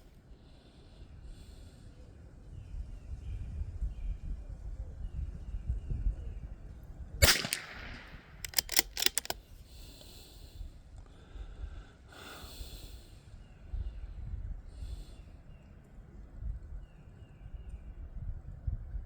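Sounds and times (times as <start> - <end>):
rifle bolt metallic clicks: 7.2 - 9.4
rifle shot with echo: 7.2 - 9.4.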